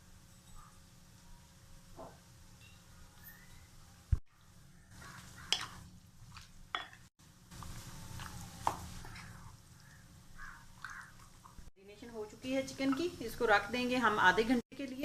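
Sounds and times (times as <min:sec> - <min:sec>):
wet stirring and scraping: 0:04.4 - 0:11.7.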